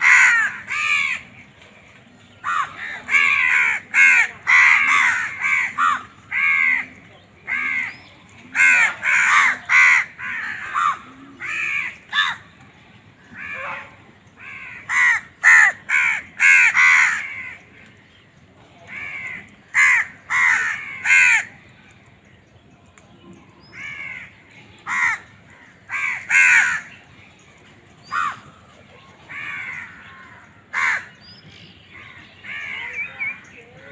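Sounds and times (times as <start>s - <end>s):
crows cawing: 0.0s - 1.3s, 2.4s - 6.9s, 7.5s - 12.5s, 13.3s - 17.8s, 18.9s - 21.5s, 23.7s - 27.0s, 28.1s - 28.6s, 29.3s - 31.2s.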